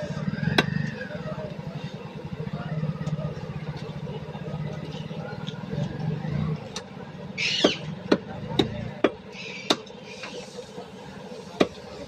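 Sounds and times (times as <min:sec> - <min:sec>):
shrill bird-like squawks: 0:07.4 - 0:07.9.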